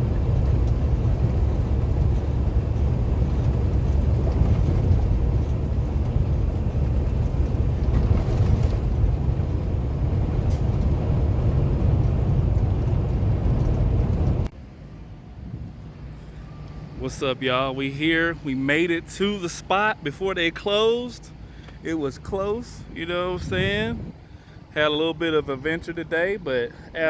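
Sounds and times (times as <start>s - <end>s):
road noise: 0.0s - 27.0s
truck engine rumble: 0.0s - 27.0s.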